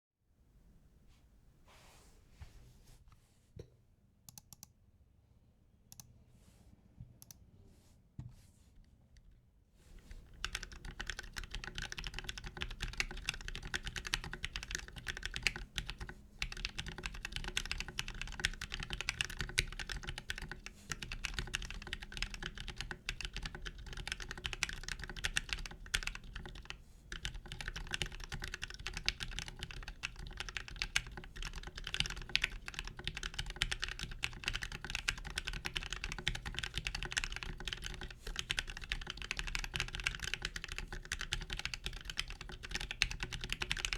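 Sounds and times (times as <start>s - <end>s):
mechanical keyboard typing: 10.2s - 43.9s.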